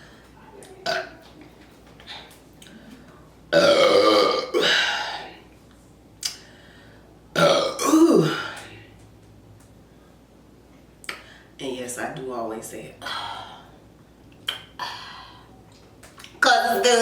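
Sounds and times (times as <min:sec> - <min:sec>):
person burping loudly: 0:03.5 - 0:05.1, 0:07.4 - 0:08.6.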